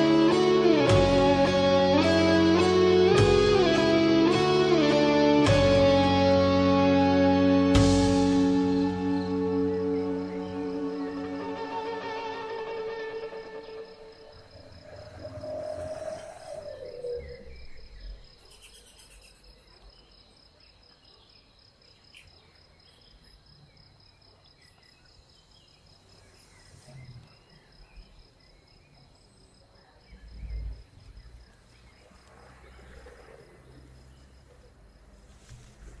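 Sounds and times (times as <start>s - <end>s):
insect trilling: 9.4s - 19.7s.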